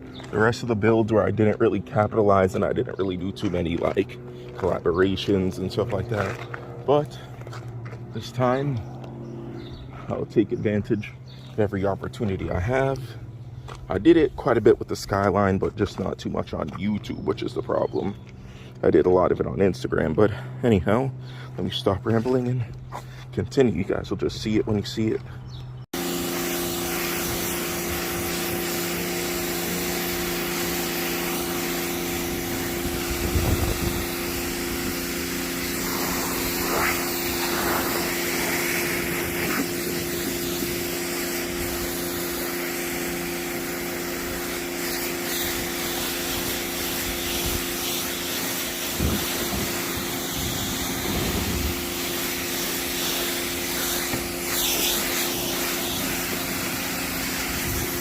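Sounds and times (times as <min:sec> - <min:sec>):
small electric motor humming: 0:25.5 - 0:58.0
hiss: 0:26.0 - 0:58.0.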